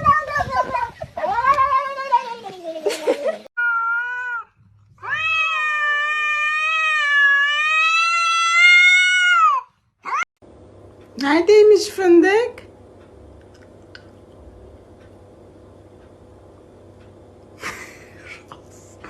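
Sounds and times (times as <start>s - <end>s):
cat yowling: 3.6s - 10.3s.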